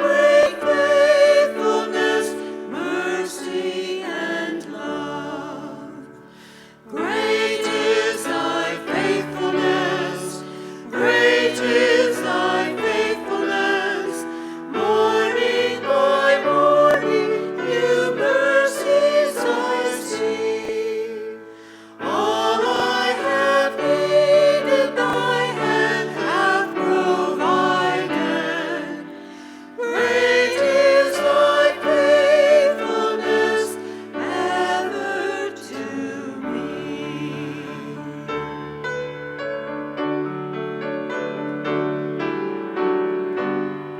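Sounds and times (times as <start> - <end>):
choir singing a hymn: 0.0 - 43.9.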